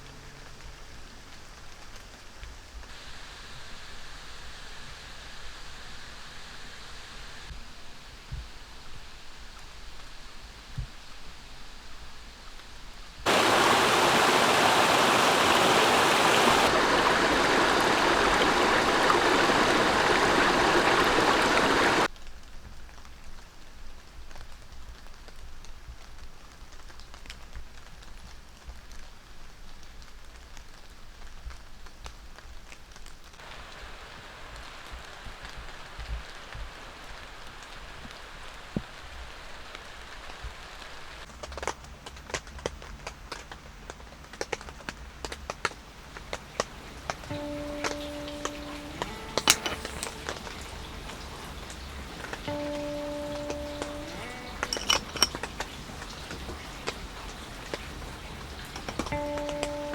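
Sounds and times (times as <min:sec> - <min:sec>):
water rushing: 0:13.3 - 0:22.1, 0:33.4 - 0:41.2, 0:45.6 - 0:59.9.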